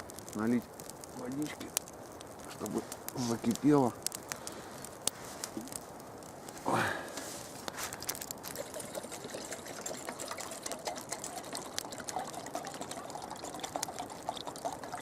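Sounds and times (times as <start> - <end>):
water pouring into a pot: 8.4 - 15.0.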